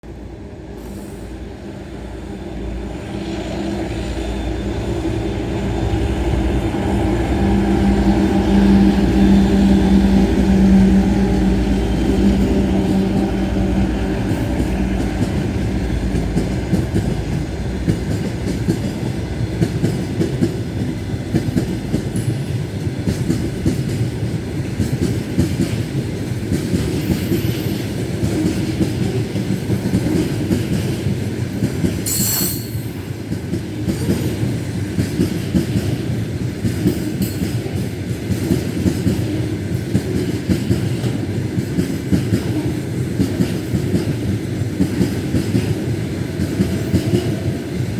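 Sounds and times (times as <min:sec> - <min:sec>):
train wheels clattering: 0:06.7 - 0:47.9.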